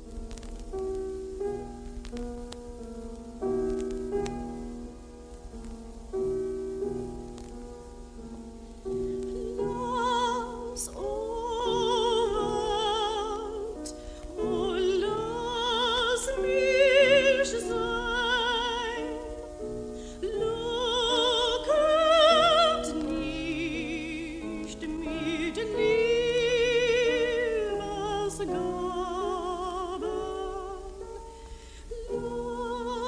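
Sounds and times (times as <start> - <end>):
piano accompaniment: 0.0 - 33.0
soprano singing with vibrato: 9.1 - 33.0.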